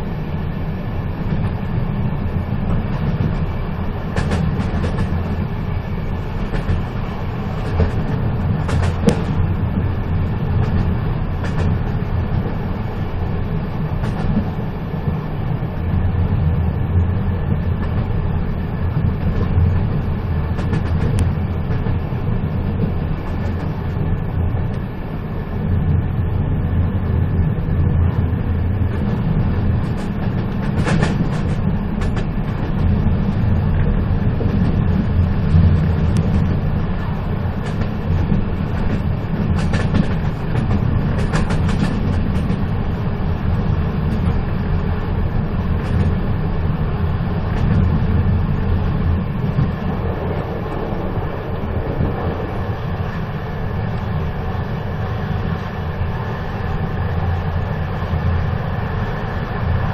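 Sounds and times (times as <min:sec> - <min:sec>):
train rumbling: 0:00.0 - 0:59.9
sharp clicks and knocks: 0:04.2 - 0:05.2, 0:06.5 - 0:06.9, 0:07.6 - 0:09.4, 0:10.6 - 0:11.8, 0:29.8 - 0:33.0, 0:37.6 - 0:42.7.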